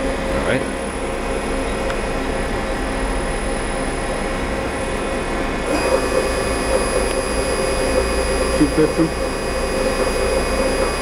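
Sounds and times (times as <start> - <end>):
lathe machine hum: 0.0 - 11.0
machine whine: 0.0 - 11.0.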